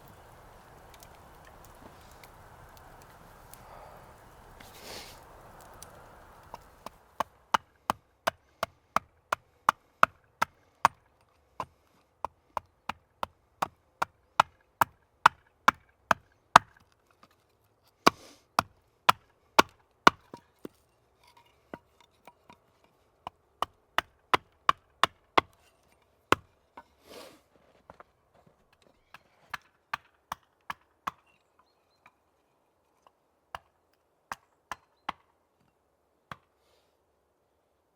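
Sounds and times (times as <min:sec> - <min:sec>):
hammer striking wood: 0:18.1 - 0:20.4.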